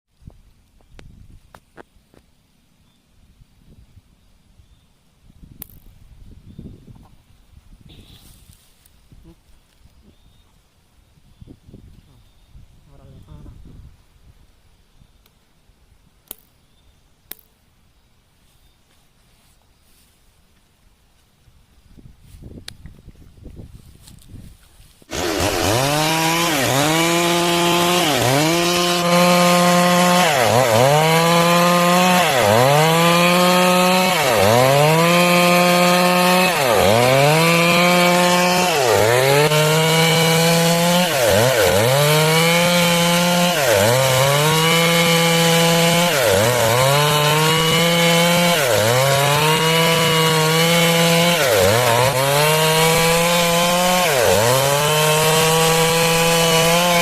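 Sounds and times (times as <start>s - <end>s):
chainsaw cutting wood: 25.0s - 57.0s.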